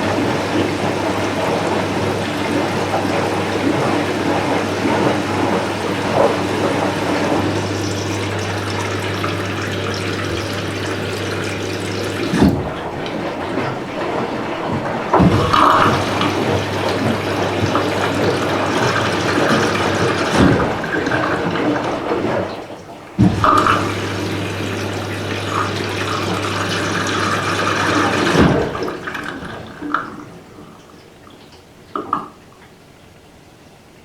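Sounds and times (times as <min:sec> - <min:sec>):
water sloshing in washing machine: 0:00.0 - 0:33.9
washing machine low hum: 0:00.0 - 0:34.0
knocks: 0:07.2 - 0:22.4, 0:23.2 - 0:24.8
thump: 0:15.2 - 0:16.0.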